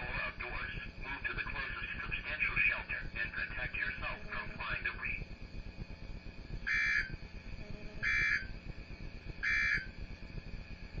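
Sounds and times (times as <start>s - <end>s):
buzzy digital squawks: 6.6s - 8.6s, 9.4s - 9.9s.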